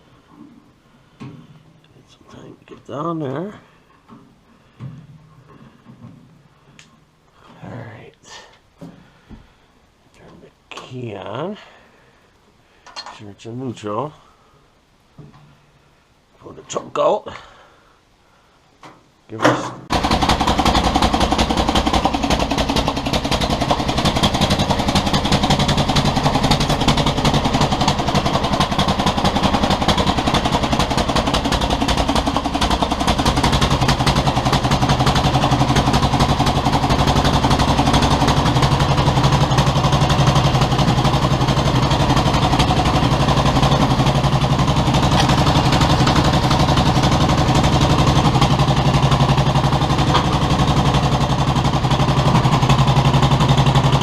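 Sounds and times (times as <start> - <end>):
tractor engine running: 19.9 - 54.0.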